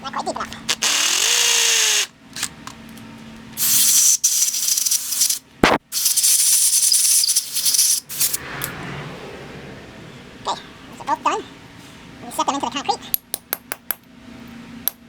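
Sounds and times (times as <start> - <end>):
power drill boring into concrete: 0.7 - 2.1
sharp knock: 5.6 - 5.9.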